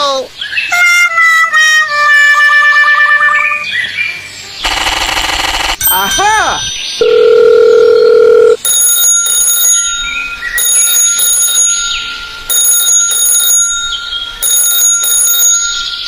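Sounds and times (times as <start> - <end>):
steady electronic tone: 4.6 - 8.6
high electronic ringing: 4.6 - 16.0.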